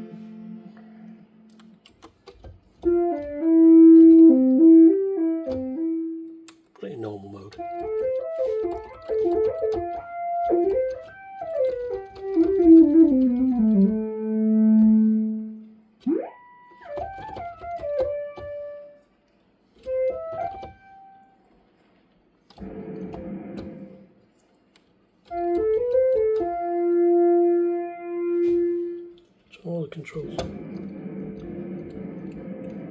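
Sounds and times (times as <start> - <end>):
synthesizer notes: 0.0 - 1.6, 12.3 - 18.8, 30.3 - 32.9.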